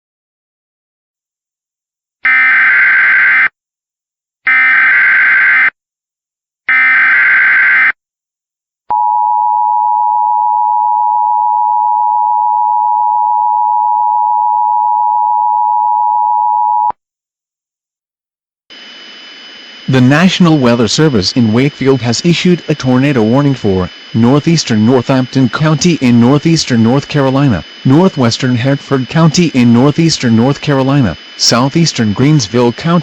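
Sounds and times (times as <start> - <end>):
warbling digital data tones: 18.8 - 33.0.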